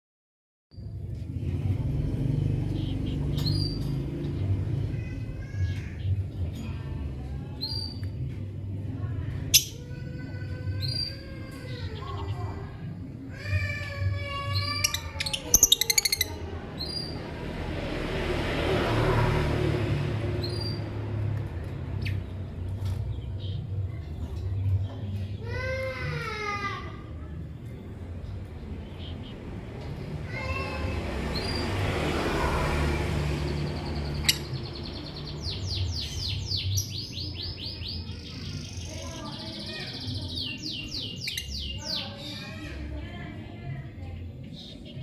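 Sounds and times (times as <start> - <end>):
bird chirping: 14.4 - 17.2, 33.4 - 42.5
lovebird chirping: 14.6 - 17.0.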